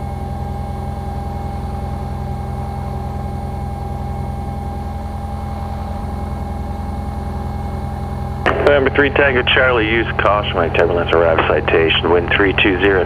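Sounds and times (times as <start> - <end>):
constant tone: 0.4 - 13.0
airplane piston engine idling: 2.9 - 13.0.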